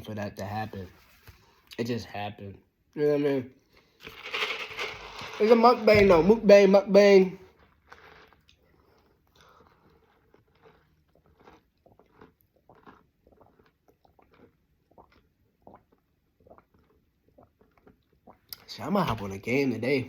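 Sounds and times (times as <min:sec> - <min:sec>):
person chewing a sandwich: 0:07.4 - 0:18.6.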